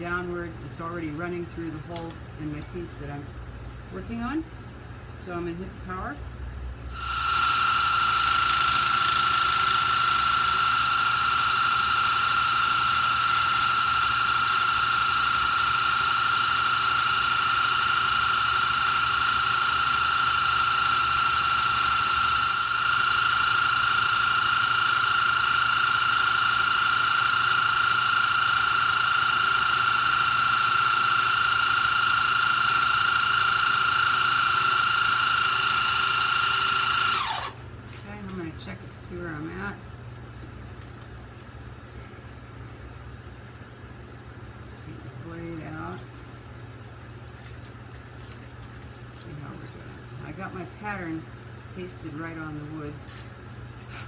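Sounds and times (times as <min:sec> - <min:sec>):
scroll saw whining: 0:06.9 - 0:37.6.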